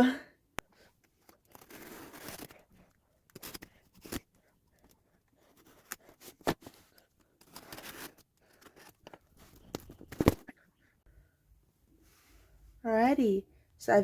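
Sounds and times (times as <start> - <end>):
tape and cardboard tearing: 1.5 - 2.7.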